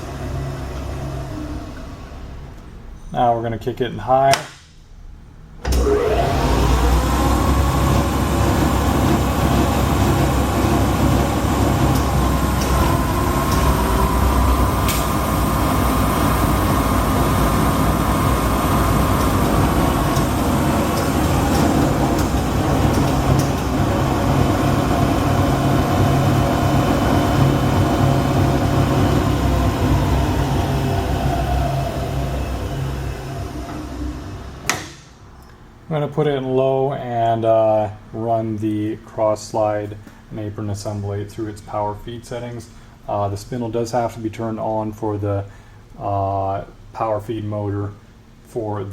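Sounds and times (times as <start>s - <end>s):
lathe spindle whining: 0.0s - 2.7s, 5.6s - 35.1s.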